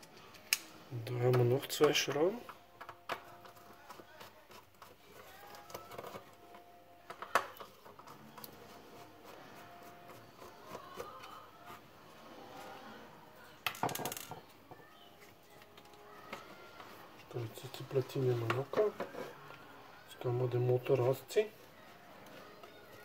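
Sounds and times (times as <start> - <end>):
plastic parts clattering: 13.6 - 14.5.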